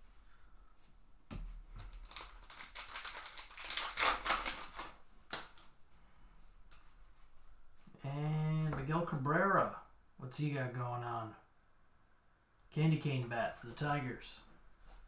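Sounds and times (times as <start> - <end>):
cards rustling and clicking: 1.8 - 5.7.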